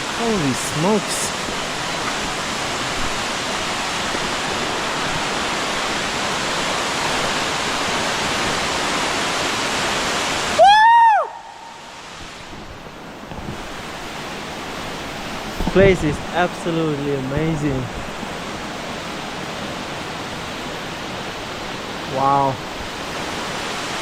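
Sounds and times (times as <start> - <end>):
waterfall pouring over rocks: 0.0 - 24.0
loud rising and falling call: 10.5 - 11.8.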